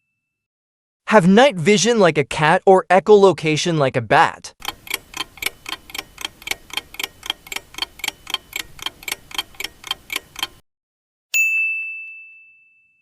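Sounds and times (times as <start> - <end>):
clock ticking: 4.6 - 10.6
bell ding: 11.4 - 13.0.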